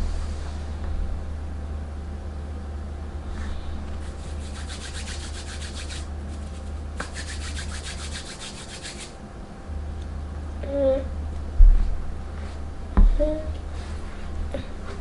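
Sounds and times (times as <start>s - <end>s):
low hum: 0.0s - 15.0s
rapid rubbing strokes: 3.9s - 9.2s.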